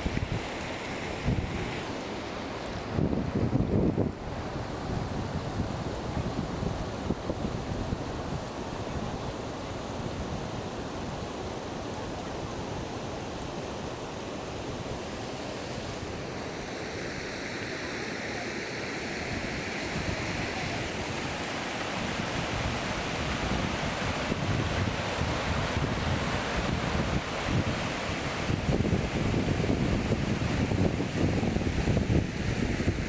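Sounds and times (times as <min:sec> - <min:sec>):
wind buffeting microphone: 0:02.9 - 0:09.2, 0:22.1 - 0:33.0
waterfall rushing: 0:14.0 - 0:32.4.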